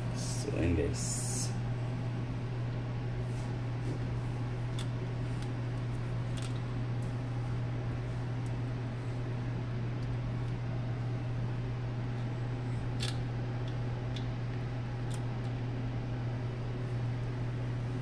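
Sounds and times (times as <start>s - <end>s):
low machine hum: 0.0s - 18.0s.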